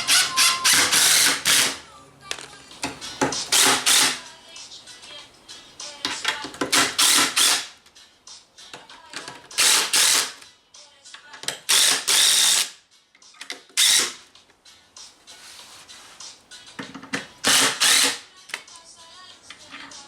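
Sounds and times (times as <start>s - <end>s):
impact driver driving screws: 0.0s - 1.8s, 3.5s - 4.2s, 6.6s - 7.7s, 9.6s - 10.4s, 11.7s - 12.7s, 13.8s - 14.2s, 17.4s - 18.2s.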